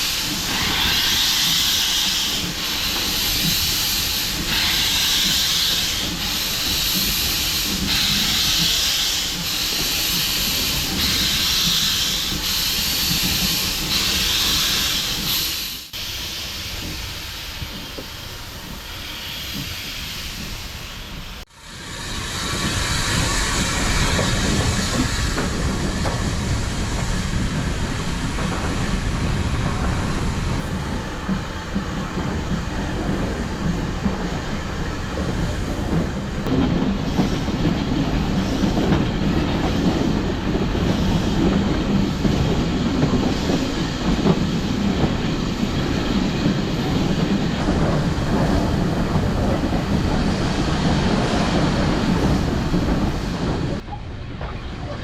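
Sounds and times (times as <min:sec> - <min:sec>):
loud hiss of steam: 0:00.0 - 0:53.8
steam train rumbling: 0:00.0 - 0:55.0.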